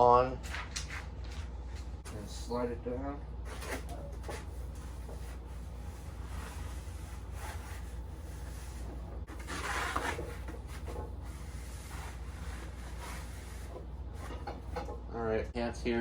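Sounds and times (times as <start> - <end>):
steady low hum: 0.0 - 16.0
rubbing and scraping of parts: 3.5 - 15.1.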